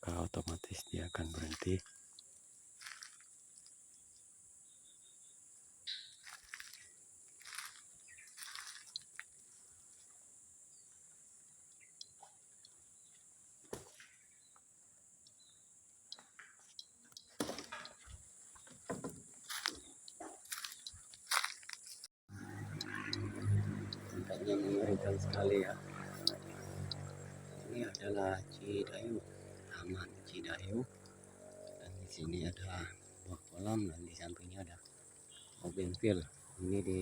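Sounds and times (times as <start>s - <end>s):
high-pitched insect drone: 22.3s - 37.0s.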